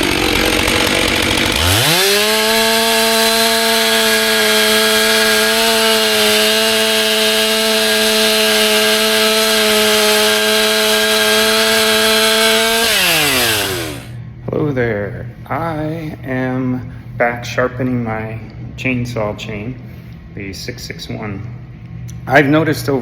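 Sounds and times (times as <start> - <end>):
chainsaw cutting log: 0.0 - 14.2.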